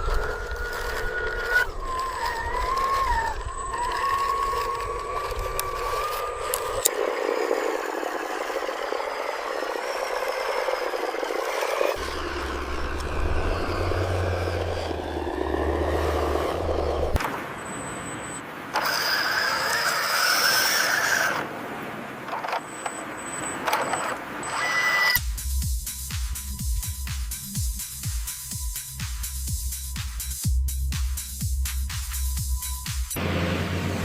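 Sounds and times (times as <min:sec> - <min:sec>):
small electric motors whining: 0:00.0 - 0:17.2, 0:18.7 - 0:21.5, 0:23.6 - 0:30.5
low hum: 0:00.0 - 0:17.8.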